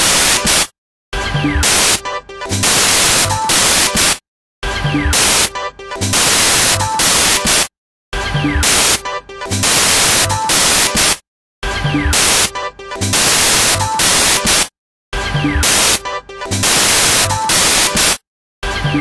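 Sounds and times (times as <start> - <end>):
hissing noise bursts: 0.0 - 0.7, 1.6 - 2.0, 2.6 - 4.2, 5.2 - 5.5, 6.1 - 7.7, 8.6 - 9.0, 9.6 - 11.2, 12.2 - 12.5, 13.1 - 14.7, 15.6 - 16.0, 16.6 - 18.2.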